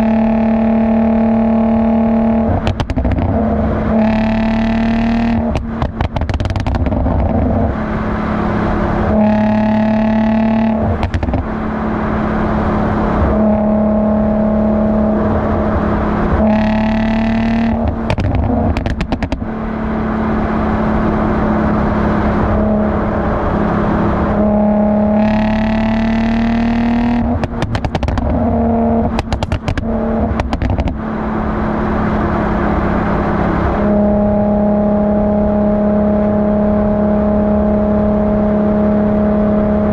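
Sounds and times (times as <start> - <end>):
car exhaust note revving: 0.0 - 39.9
exhaust crackles and pops: 1.8 - 7.8, 9.2 - 11.5, 16.4 - 19.5, 25.1 - 31.1.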